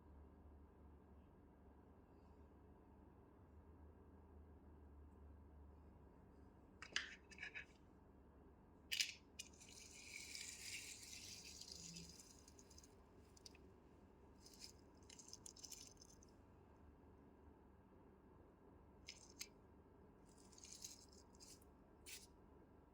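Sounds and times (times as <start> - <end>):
soft hiss: 9.4 - 13.6
faint clicks and rattling: 14.4 - 16.3.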